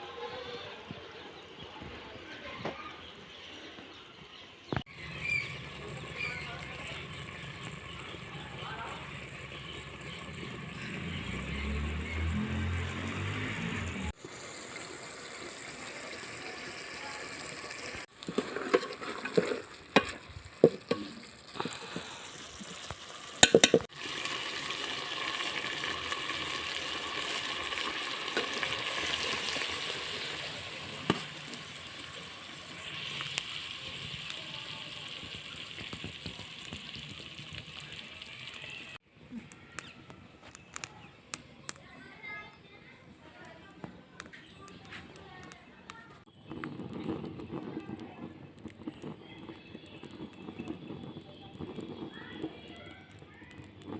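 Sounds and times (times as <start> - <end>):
vegetables sizzling in a pan: 4.8 - 39.0
spoon scraping a pan: 18.2 - 23.9.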